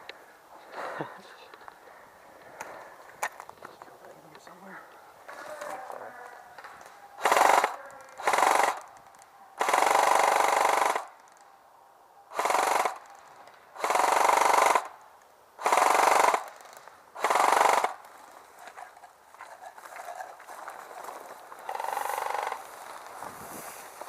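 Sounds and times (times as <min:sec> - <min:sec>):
airsoft gun firing bursts: 0:07.2 - 0:08.9, 0:09.6 - 0:11.2, 0:12.3 - 0:13.1, 0:13.8 - 0:15.0, 0:15.6 - 0:18.0, 0:21.7 - 0:22.6.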